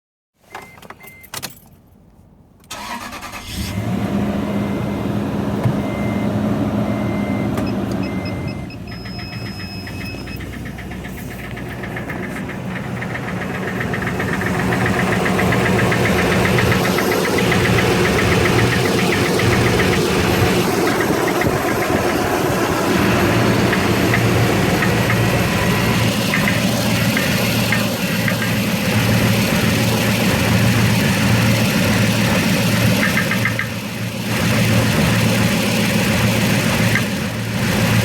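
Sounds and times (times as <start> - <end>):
dashboard warning chime beeping: 0.4 - 1.4, 4.5 - 13.2, 14.1 - 28.6
engine cranking and starting: 2.7 - 4.2, 8.0 - 38.0
engine running with rapid knocking: 9.0 - 38.0.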